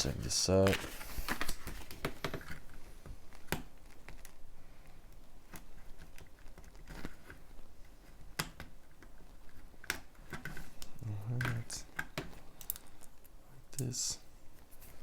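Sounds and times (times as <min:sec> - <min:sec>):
plastic parts clicking: 0:08.1 - 0:14.0.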